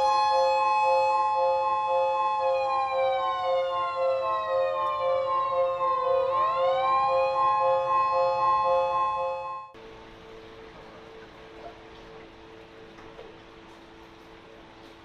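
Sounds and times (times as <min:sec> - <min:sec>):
siren wailing: 0:00.0 - 0:09.8.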